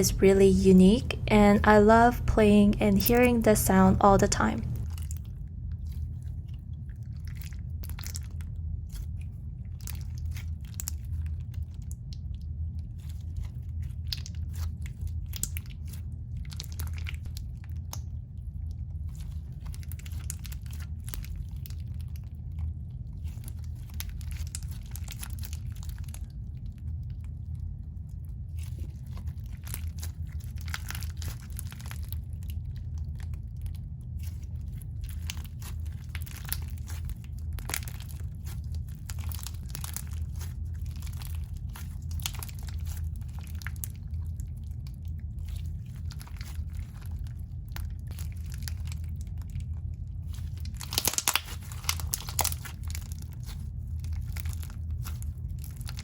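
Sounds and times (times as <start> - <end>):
steady low hum: 0.0 - 56.0
crunchy slime beads crackling: 28.6 - 33.1, 34.2 - 44.2, 50.2 - 56.0.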